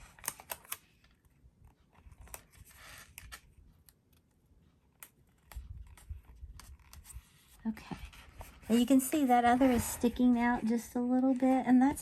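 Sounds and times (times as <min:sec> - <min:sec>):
paper rustling: 0:05.3 - 0:11.6.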